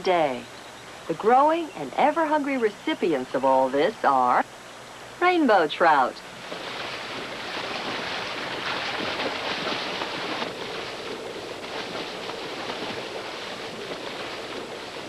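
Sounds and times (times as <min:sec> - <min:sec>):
fish splashing at water surface: 0:06.4 - 0:15.0.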